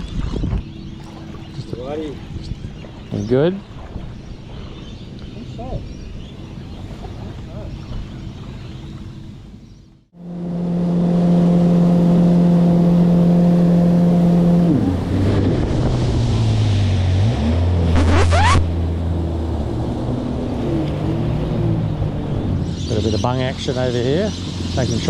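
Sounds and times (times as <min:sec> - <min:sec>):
engine running: 0:06.4 - 0:25.0
rising whine: 0:10.2 - 0:22.6.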